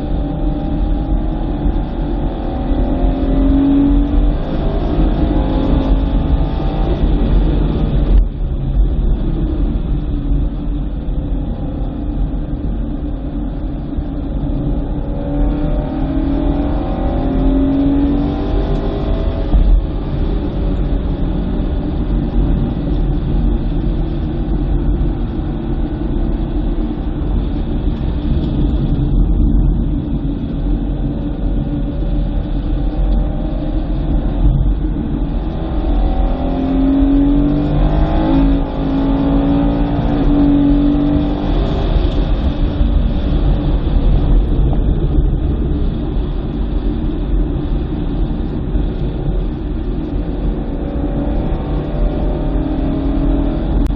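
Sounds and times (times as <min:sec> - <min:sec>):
road and wind noise: 0:00.0 - 0:53.9
car engine revving hard: 0:01.8 - 0:08.1, 0:33.0 - 0:44.5, 0:49.3 - 0:53.9.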